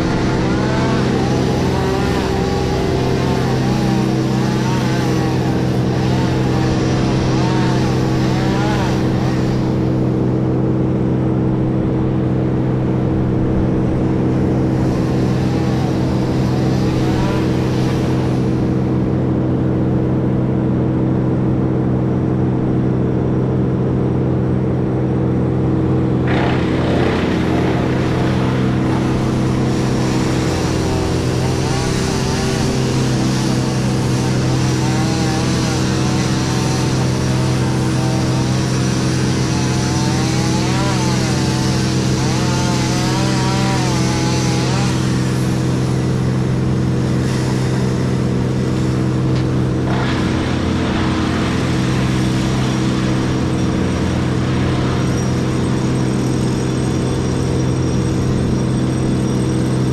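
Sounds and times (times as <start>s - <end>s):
heavy diesel engine running: 0.0s - 59.9s
machine whine wavering in pitch: 44.6s - 59.9s.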